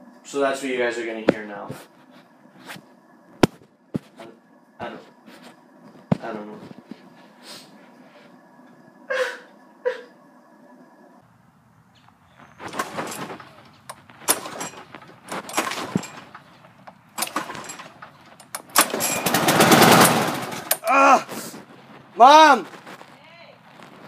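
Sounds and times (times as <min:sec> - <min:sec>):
engine sputters: 0:12.4 - 0:20.8
lawnmower recoil starter pulls: 0:12.6 - 0:20.9.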